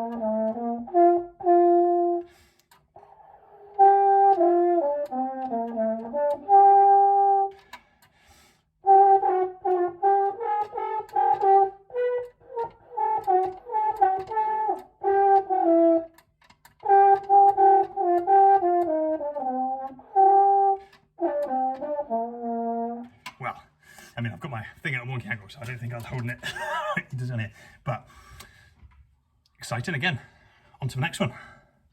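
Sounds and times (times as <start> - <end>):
french horn playing scale runs: 8.8 - 23.2.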